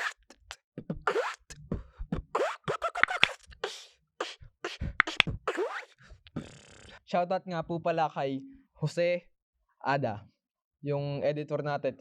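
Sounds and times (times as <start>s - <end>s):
beatbox kick-drum and clicks: 0.0s - 7.0s
beatbox zipper squeaks: 0.0s - 7.0s.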